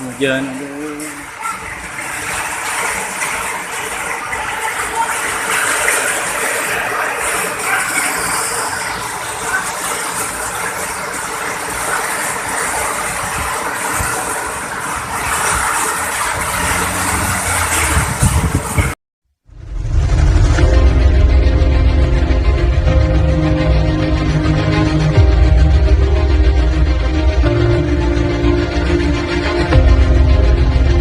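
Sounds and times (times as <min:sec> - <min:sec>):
rain falling: 0:00.0 - 0:31.0
low rumble: 0:16.7 - 0:31.0.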